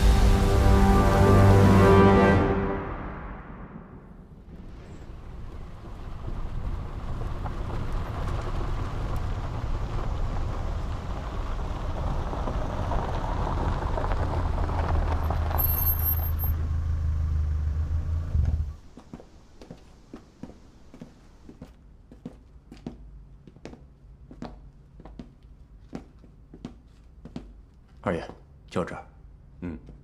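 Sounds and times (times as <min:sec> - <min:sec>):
deep hum: 0:00.0 - 0:07.2
low engine rumble: 0:03.8 - 0:21.6.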